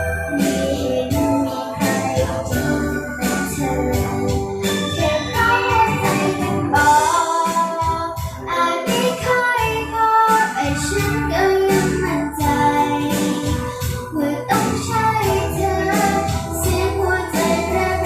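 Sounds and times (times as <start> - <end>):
high voice singing: 0.0 - 18.0
instrumental backing with beat: 0.0 - 18.0.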